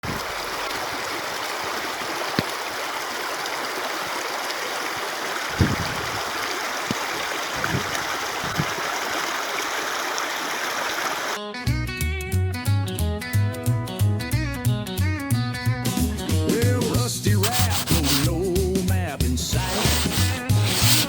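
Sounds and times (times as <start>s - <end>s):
stream water flowing: 0.0s - 11.4s, 17.4s - 21.0s.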